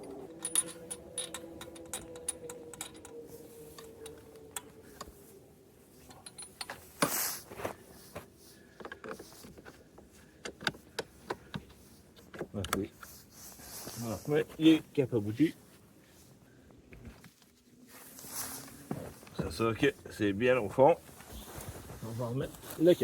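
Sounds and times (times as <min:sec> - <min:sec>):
wrench clinking on spark plugs: 0:00.0 - 0:03.2, 0:06.1 - 0:06.8.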